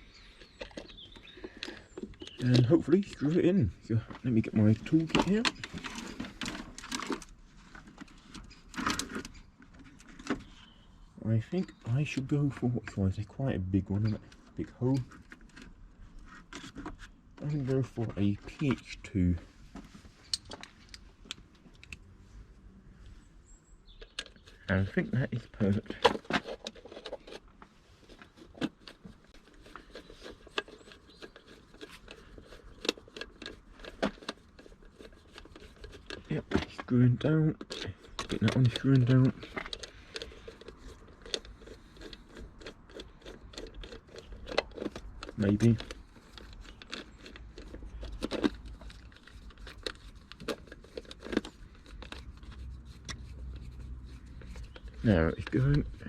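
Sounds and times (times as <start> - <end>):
screwdriver scraping: 24.0 - 56.0.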